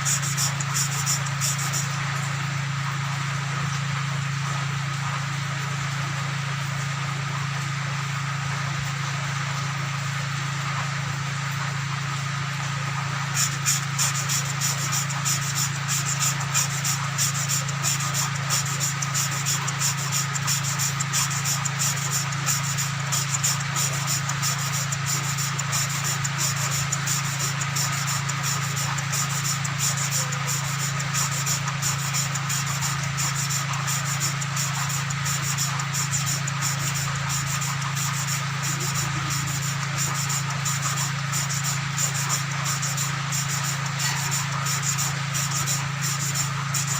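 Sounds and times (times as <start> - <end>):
gritty valve scraping: 0.0 - 2.3, 13.1 - 46.9
steady low hum: 0.0 - 46.9.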